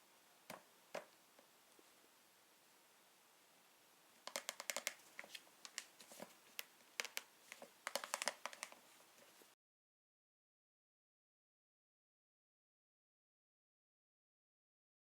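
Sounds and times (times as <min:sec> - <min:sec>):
small clicks and crinkles: 0:04.2 - 0:09.5.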